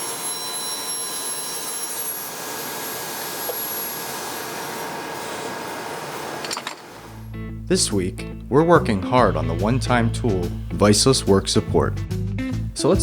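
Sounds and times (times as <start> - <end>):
thin high whine: 0.0 - 6.3
steady machinery noise: 9.1 - 11.7.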